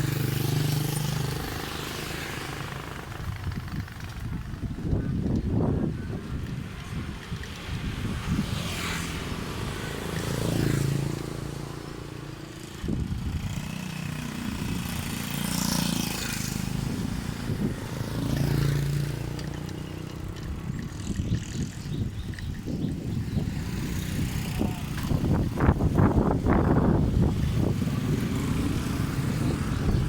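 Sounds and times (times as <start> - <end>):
motorbikes passing: 0.0 - 30.0
wind buffeting microphone: 2.4 - 30.0.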